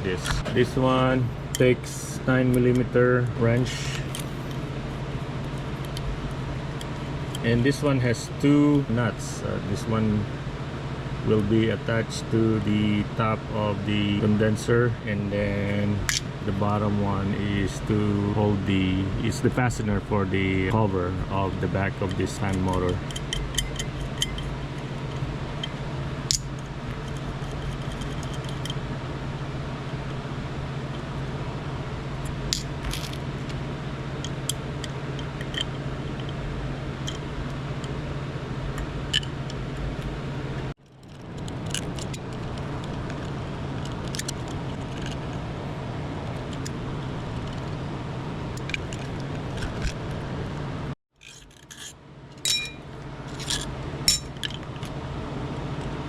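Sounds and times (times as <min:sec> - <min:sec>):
steady low hum: 0:00.0 - 0:56.0
wrench clicking and scraping metal: 0:51.2 - 0:54.6.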